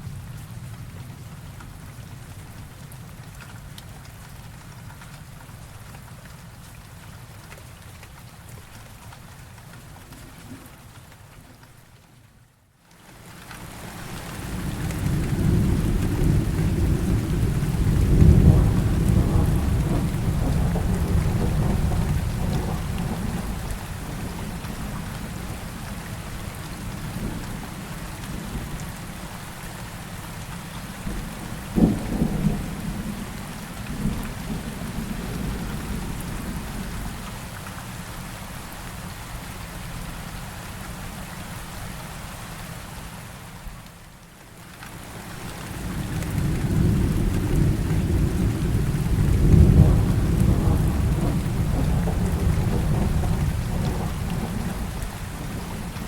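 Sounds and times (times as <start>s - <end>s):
steady rain: 0.0s - 56.0s
thunder rumbling: 14.5s - 25.8s, 31.0s - 37.2s, 45.6s - 56.0s.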